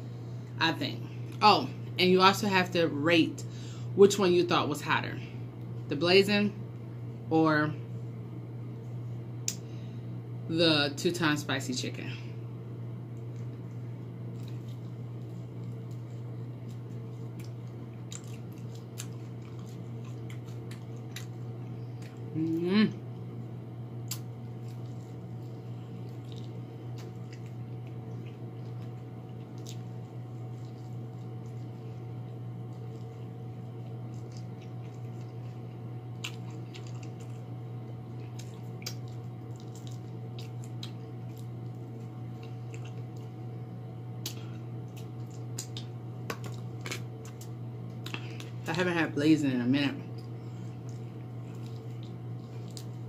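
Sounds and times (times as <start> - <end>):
steady low hum: 0.0 - 53.0
wet chewing smacks: 13.2 - 22.3, 24.0 - 43.5, 44.2 - 48.7, 50.1 - 53.0.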